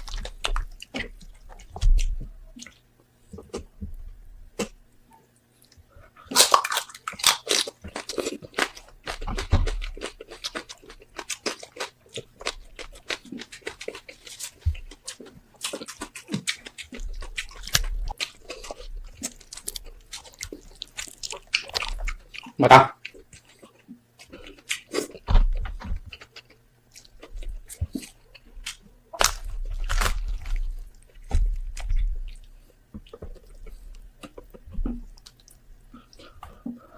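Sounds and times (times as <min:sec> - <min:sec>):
crisp skin crunching: 0:00.0 - 0:02.7, 0:06.3 - 0:22.2, 0:26.1 - 0:32.5
wet chewing and smacking: 0:00.0 - 0:04.0, 0:05.4 - 0:36.9.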